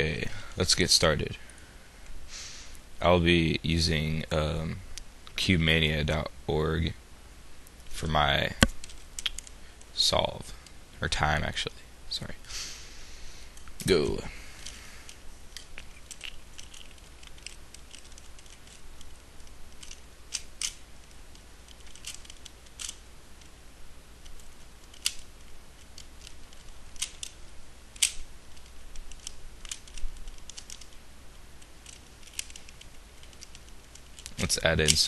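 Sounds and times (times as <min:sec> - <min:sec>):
puzzle cube plastic clicks: 0:14.6 - 0:23.6, 0:24.2 - 0:31.0, 0:31.6 - 0:35.0.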